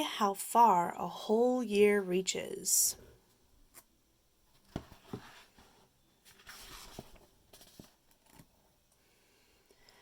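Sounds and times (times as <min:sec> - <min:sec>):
paper pages rustling: 0:04.6 - 0:08.5.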